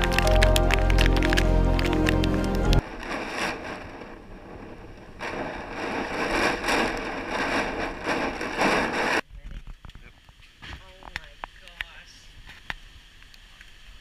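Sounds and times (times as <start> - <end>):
music: 0.0 - 2.8
strong wind buffeting microphone: 0.0 - 9.2.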